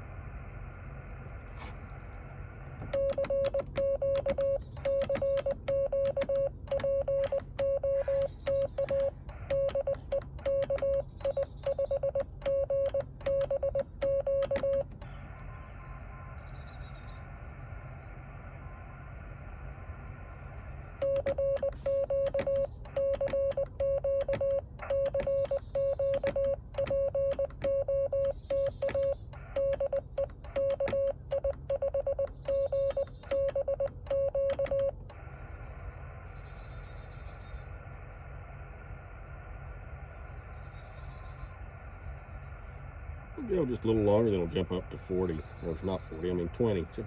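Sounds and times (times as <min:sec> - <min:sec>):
morse code beeps: 0:02.8 - 0:15.0, 0:21.0 - 0:35.2
radio receiver hiss: 0:34.9 - 0:47.0.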